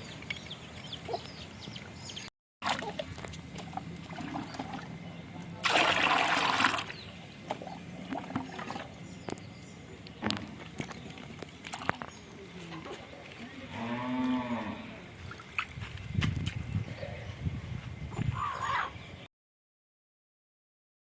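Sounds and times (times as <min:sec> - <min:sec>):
water splashing as poured: 0:05.6 - 0:07.1.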